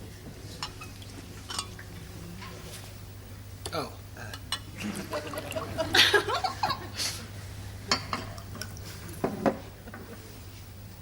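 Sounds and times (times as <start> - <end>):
studio audience laughing: 4.8 - 7.0.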